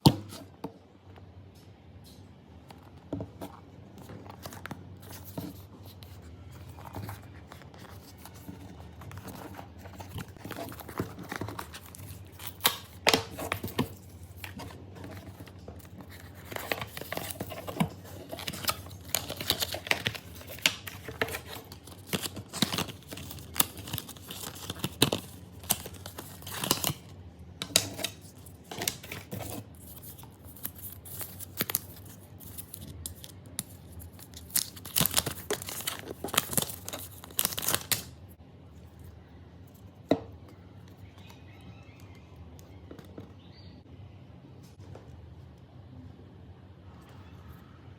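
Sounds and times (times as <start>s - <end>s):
packaging crinkling: 4.2s - 38.2s.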